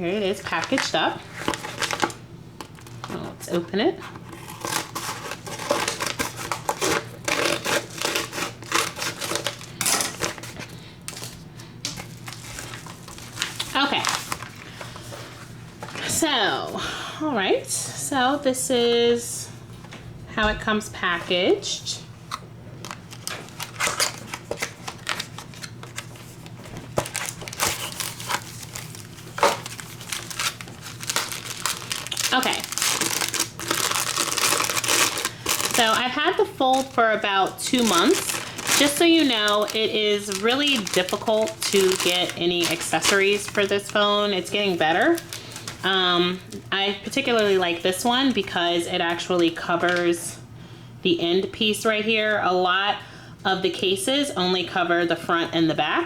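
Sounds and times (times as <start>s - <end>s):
packaging rustling and crinkling: 0.5s - 3.3s, 4.0s - 16.1s, 22.3s - 47.6s.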